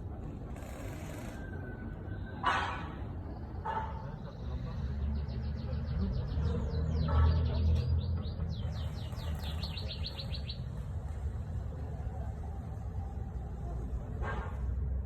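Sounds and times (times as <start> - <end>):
bird chirping: 5.0 - 10.8.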